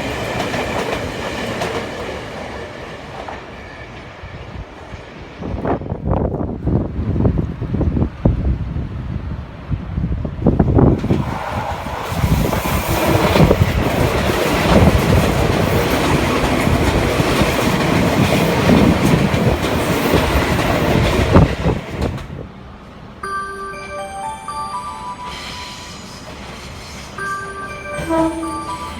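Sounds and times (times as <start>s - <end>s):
electric train running on track: 0.0s - 28.9s
rumbling hissing rail noise: 3.4s - 23.2s, 24.6s - 28.9s
platform chime melody: 23.2s - 26.2s, 27.2s - 28.9s.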